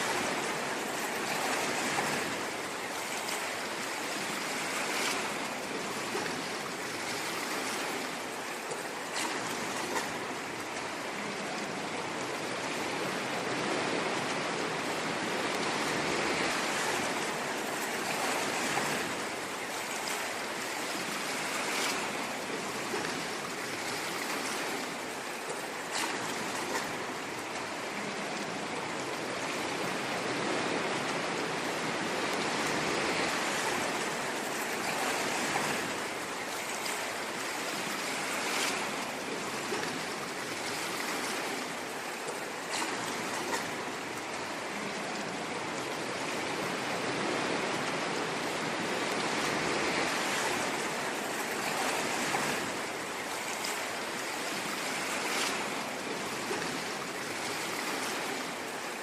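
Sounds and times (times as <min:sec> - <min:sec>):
ocean waves washing on shore: 0:00.0 - 0:59.0.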